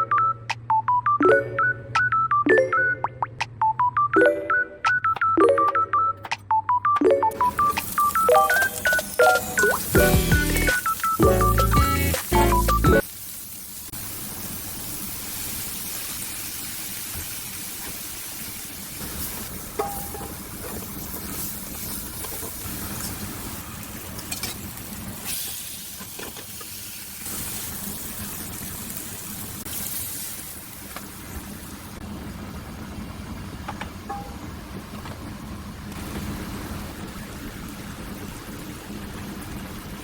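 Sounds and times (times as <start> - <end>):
food sizzling in a pan: 7.5 - 31.8.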